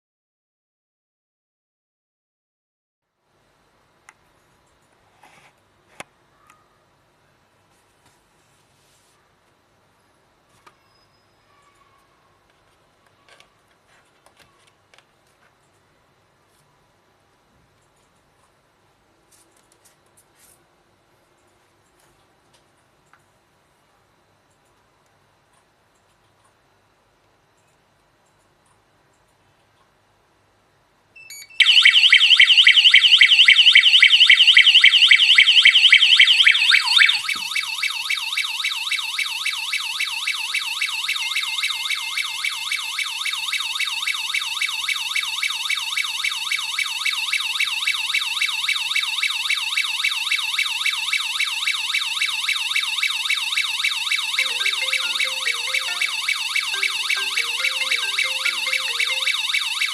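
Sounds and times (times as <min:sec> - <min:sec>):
alarm siren warbling: 0:31.6 - 0:38.0, 0:54.2 - 0:59.9.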